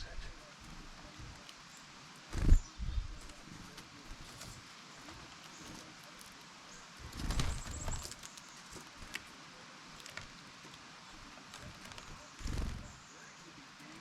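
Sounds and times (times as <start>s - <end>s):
bird taps and scratches: 7.1s - 13.0s.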